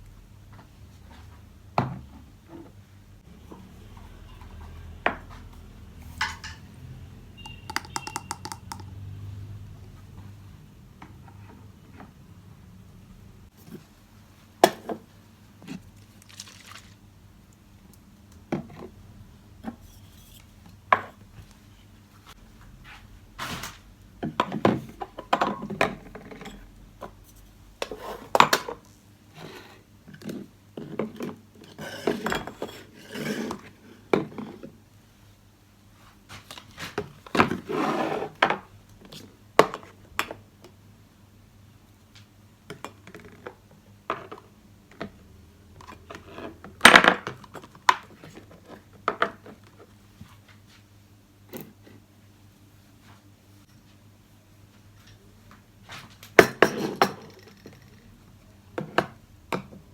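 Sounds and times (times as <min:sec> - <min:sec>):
household objects clinking and knocking: 0:07.4 - 0:09.1.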